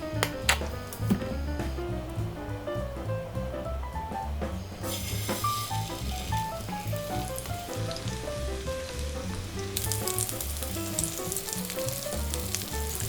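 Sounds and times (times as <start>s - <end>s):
background music: 0.0s - 13.0s
pancakes sizzling in oil: 4.8s - 13.0s.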